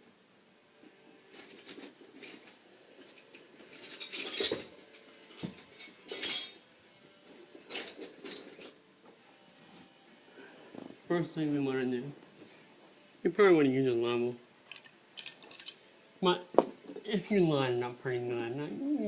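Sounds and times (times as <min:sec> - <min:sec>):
metal clinking and rattling: 0:01.2 - 0:06.7, 0:07.5 - 0:08.8, 0:14.6 - 0:15.8.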